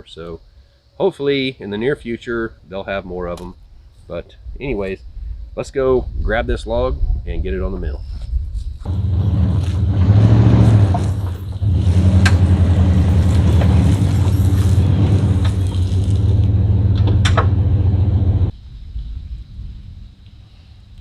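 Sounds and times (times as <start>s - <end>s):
engine humming: 8.8s - 18.6s.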